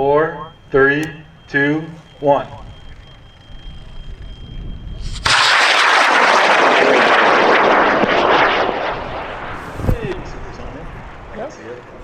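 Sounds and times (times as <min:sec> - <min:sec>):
rocket motor roaring: 0:00.6 - 0:12.0
sharp thump: 0:09.5 - 0:10.2.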